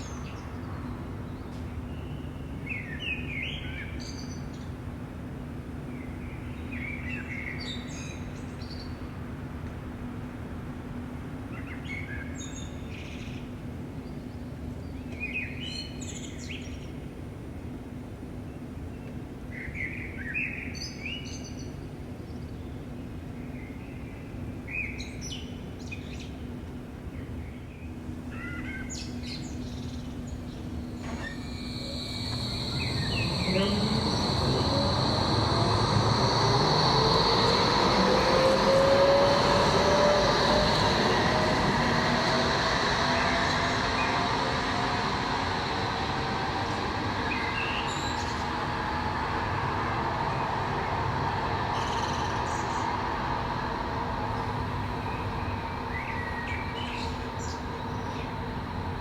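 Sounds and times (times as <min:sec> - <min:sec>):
tram motor whine rising: 0:29.0 - 0:59.0
wheels on rails: 0:30.0 - 0:59.0
bird chirps: 0:30.5 - 0:37.8.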